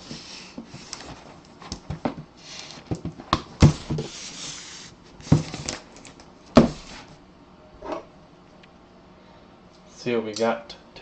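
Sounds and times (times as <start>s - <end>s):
cardboard scraping and rustling: 0.1s - 5.8s.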